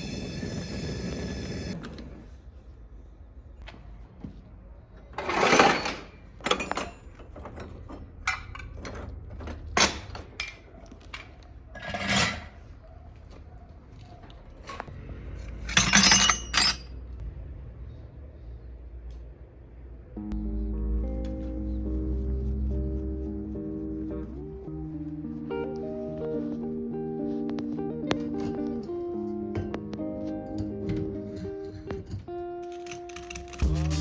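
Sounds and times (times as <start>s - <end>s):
metallic clinks and knocks: 5.3s - 12.6s, 15.6s - 17.1s, 31.3s - 34.0s.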